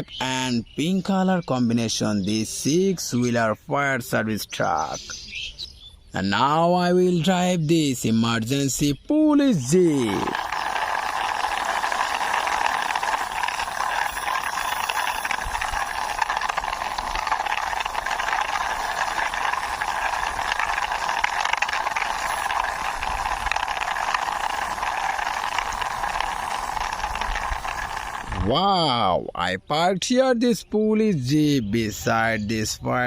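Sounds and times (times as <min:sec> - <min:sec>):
toy wheels rolling on wall: 0:08.7 - 0:29.1.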